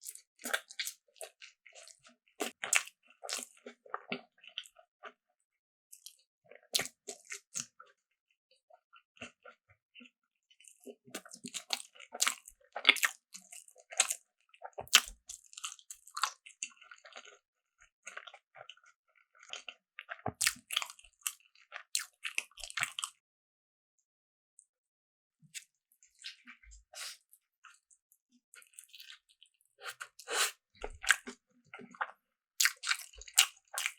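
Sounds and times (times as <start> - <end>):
crunchy bites and chewing: 29.8 - 33.9.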